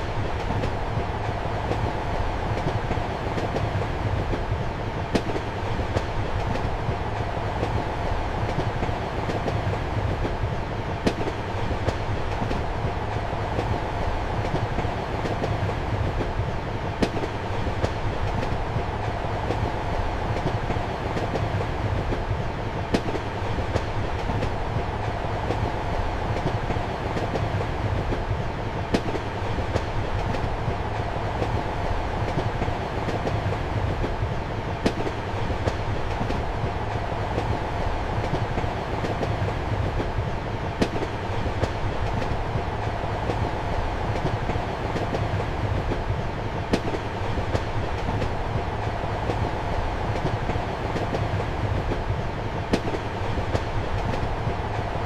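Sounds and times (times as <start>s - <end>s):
train rumble inside compartment: 0.0s - 55.0s.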